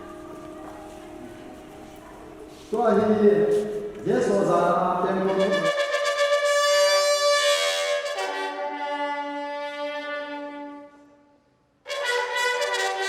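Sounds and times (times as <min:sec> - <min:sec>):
brass instrument long notes: 0:05.0 - 0:13.0.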